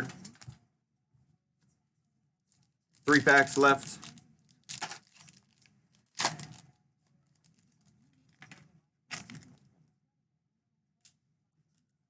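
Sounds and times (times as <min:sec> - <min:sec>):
foil pack crinkling and tearing: 0:03.0 - 0:06.7.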